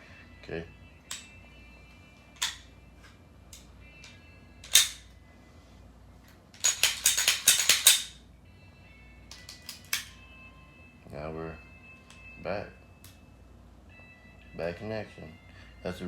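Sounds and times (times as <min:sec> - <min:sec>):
pistol metallic clicks: 0:01.1 - 0:01.3, 0:02.4 - 0:02.7, 0:03.5 - 0:05.1, 0:06.6 - 0:08.2, 0:09.3 - 0:10.2.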